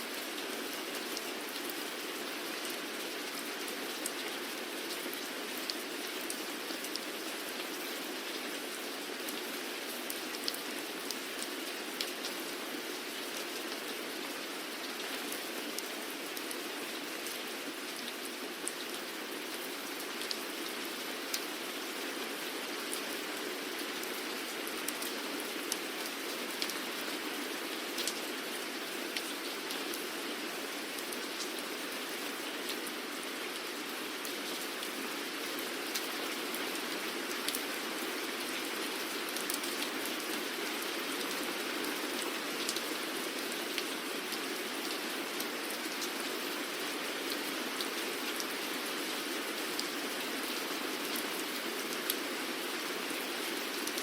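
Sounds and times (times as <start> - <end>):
steady rain hiss: 0.0 - 54.0
raindrops ticking on a surface: 3.5 - 16.6, 22.8 - 30.1, 38.4 - 42.9, 43.6 - 48.6.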